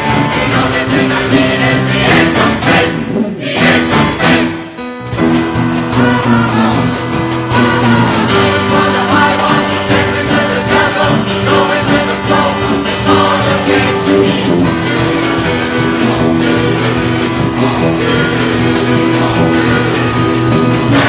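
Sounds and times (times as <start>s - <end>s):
choir singing: 0.0s - 5.0s, 5.9s - 21.0s
band with percussion: 0.0s - 21.0s.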